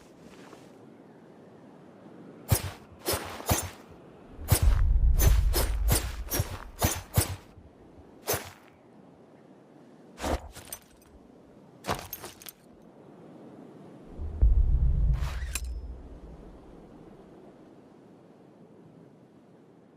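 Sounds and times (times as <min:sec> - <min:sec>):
low rumble: 0:04.3 - 0:06.8, 0:14.0 - 0:17.3.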